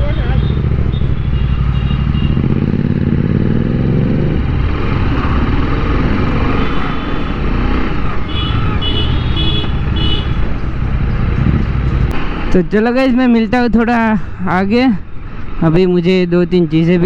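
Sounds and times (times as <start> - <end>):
motorcycle engine revving: 0.0 - 12.1.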